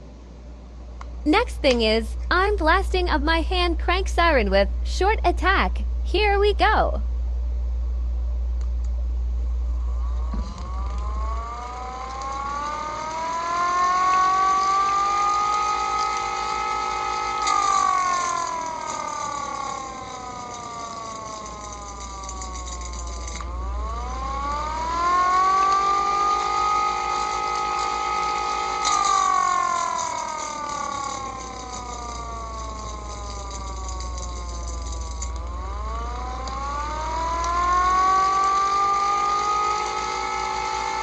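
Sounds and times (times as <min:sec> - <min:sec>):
hand-crank siren wailing: 0:09.8 - 0:41.0.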